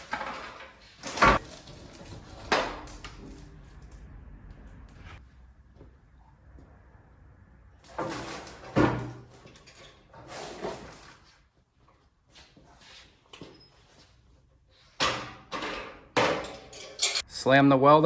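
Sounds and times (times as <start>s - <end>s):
scraping and clattering: 7.8s - 11.3s.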